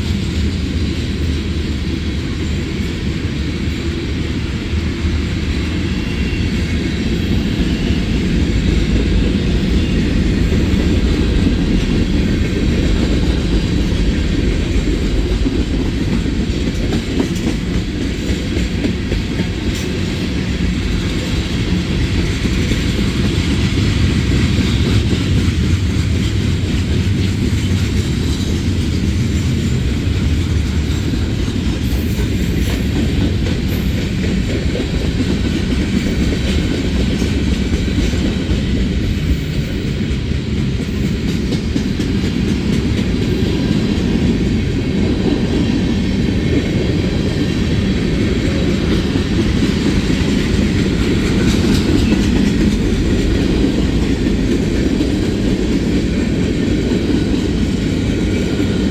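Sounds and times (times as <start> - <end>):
train cars rumbling: 0.0 - 58.9
wheels clicking over rail joints: 46.6 - 58.9.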